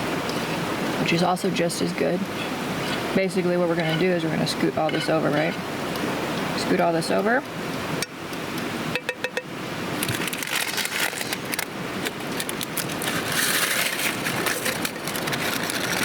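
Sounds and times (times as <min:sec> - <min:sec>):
utensil scraping a plate: 0:02.3 - 0:05.7, 0:12.8 - 0:16.0.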